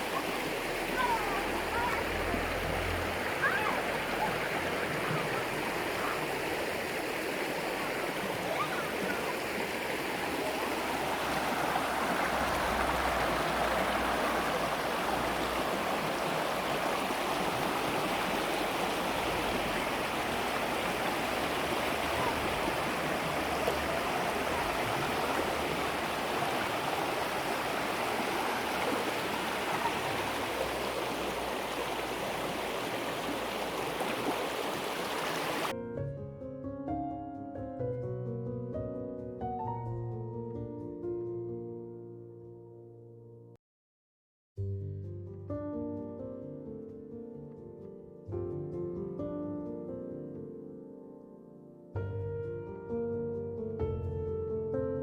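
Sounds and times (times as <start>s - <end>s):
river water flowing: 0.0s - 35.7s.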